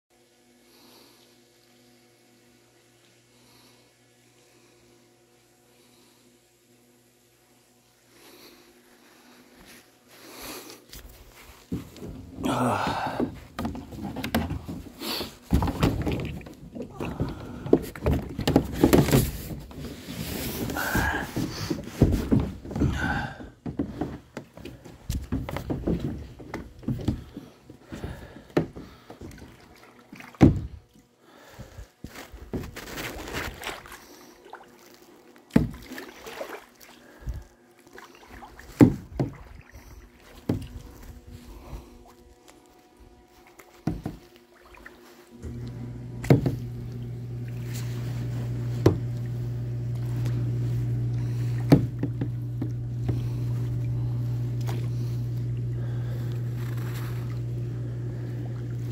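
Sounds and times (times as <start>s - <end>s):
water noise: 11.2s - 23.6s, 26.9s - 31.4s, 33.2s - 58.9s.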